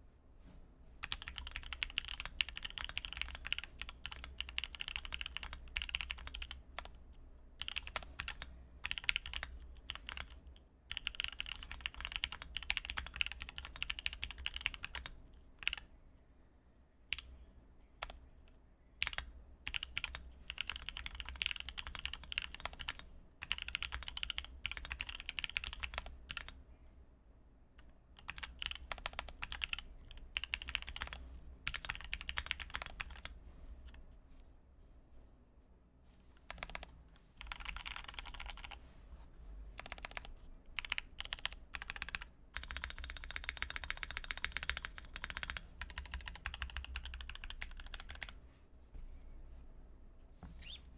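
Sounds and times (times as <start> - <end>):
mechanical keyboard typing: 1.0 - 7.0, 7.6 - 15.9, 19.0 - 26.6, 28.2 - 33.3, 36.5 - 38.8, 39.8 - 48.4.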